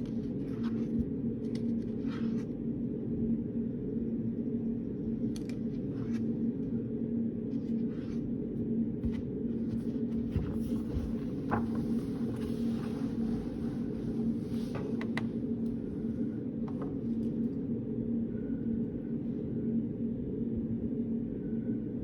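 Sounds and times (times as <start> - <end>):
ticks and rustles of desk work: 0.0 - 2.6, 5.1 - 6.8, 7.4 - 17.7
steady low droning hum: 0.0 - 22.0.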